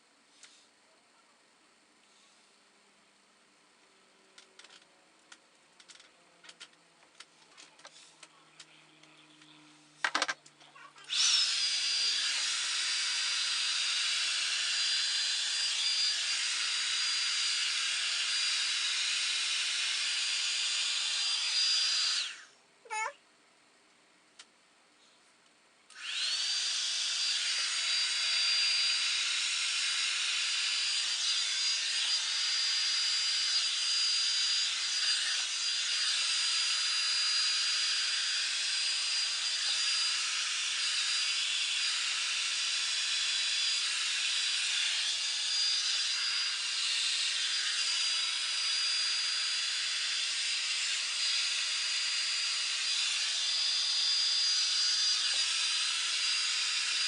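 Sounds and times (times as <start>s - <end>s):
hot-air brush motor whining: 11.0s - 23.1s, 25.9s - 57.0s.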